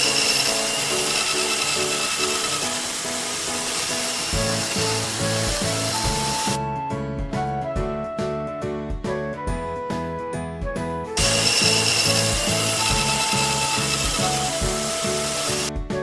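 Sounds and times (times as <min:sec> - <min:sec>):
power tool grinding wood: 0:00.0 - 0:06.6, 0:11.2 - 0:15.7
background music: 0:00.0 - 0:16.0.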